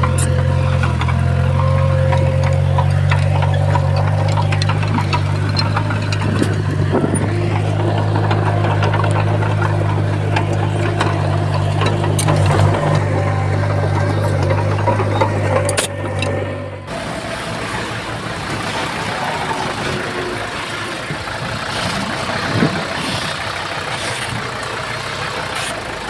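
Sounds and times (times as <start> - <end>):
metallic clanks and knocks: 0.0 - 19.3
diesel engine running: 0.0 - 26.0.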